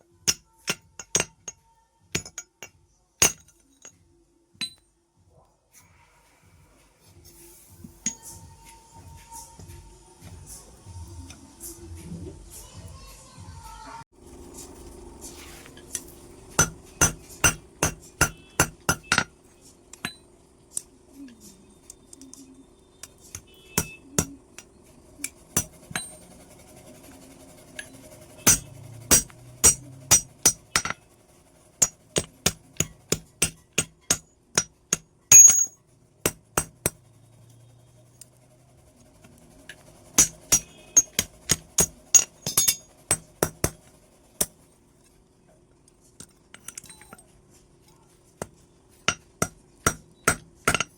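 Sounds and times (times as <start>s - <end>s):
hammer striking metal: 0.2s - 3.9s, 16.5s - 19.4s, 23.0s - 24.7s, 27.8s - 31.0s, 31.8s - 37.0s, 40.2s - 44.6s, 48.4s - 50.9s.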